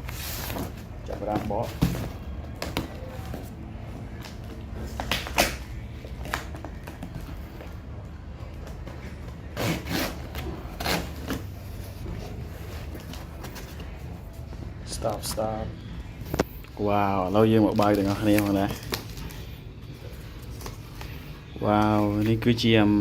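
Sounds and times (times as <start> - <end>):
steady low hum: 0.0 - 23.0
packaging rustling and clicking: 17.6 - 21.3.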